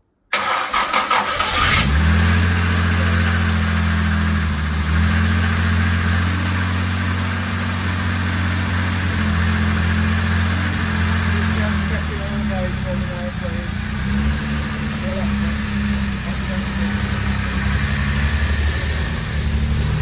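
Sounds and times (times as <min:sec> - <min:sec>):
car engine cranking on starter: 0:00.3 - 0:03.5
car engine running: 0:00.7 - 0:20.0.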